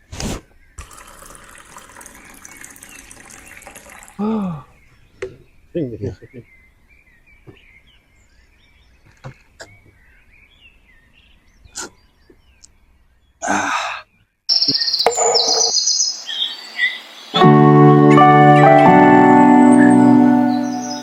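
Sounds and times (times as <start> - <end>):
faint bird chirps: 2.2 - 17.4
piano music with sustained chords: 17.4 - 21.0.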